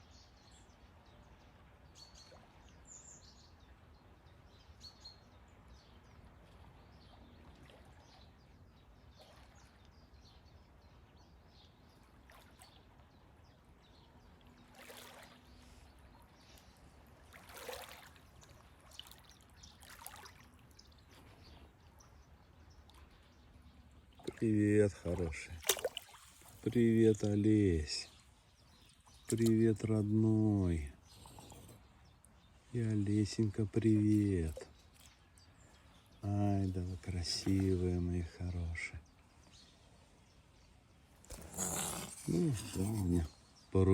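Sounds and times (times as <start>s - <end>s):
soft water splashes: 0.2s - 43.7s
water trickling: 11.5s - 38.4s
faint bird chirps: 18.4s - 43.9s.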